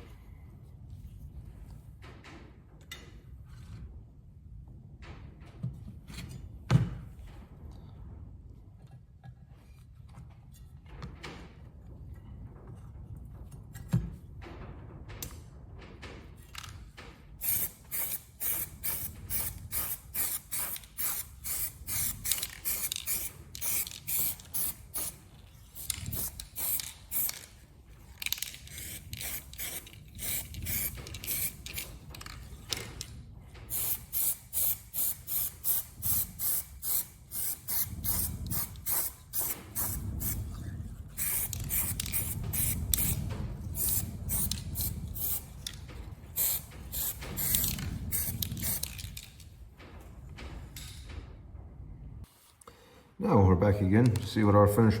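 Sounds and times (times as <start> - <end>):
spray paint can hissing: 17.4 - 27.6, 28.3 - 32.0, 33.7 - 40.5, 41.1 - 45.6, 46.4 - 49.1.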